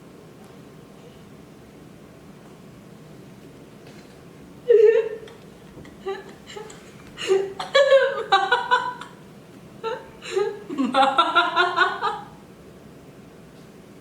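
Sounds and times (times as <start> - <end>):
children giggling: 5.9 - 9.2, 9.9 - 12.4.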